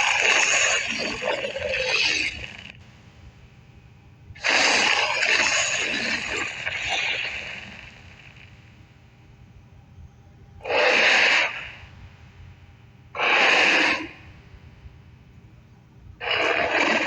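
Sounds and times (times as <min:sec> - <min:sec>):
creature call: 0:00.0 - 0:02.8, 0:04.4 - 0:08.0, 0:10.6 - 0:11.9, 0:13.2 - 0:14.3, 0:16.2 - 0:17.0.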